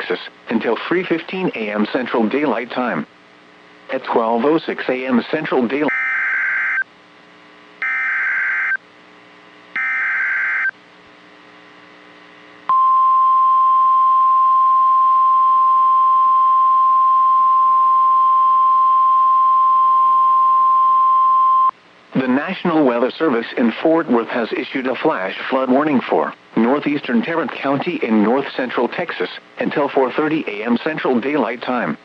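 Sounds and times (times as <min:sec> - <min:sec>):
steady warning alarm tone: 0:05.9 - 0:06.8, 0:07.8 - 0:08.8, 0:09.8 - 0:10.8.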